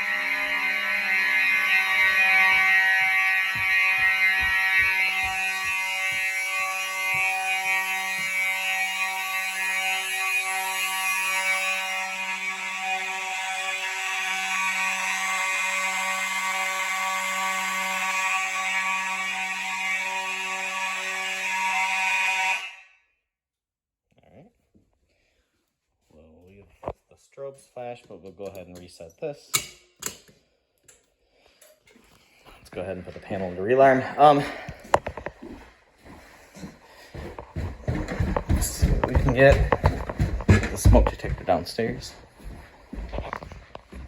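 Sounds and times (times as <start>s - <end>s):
fire alarm horns sounding: 0.0s - 23.1s, 32.5s - 44.0s.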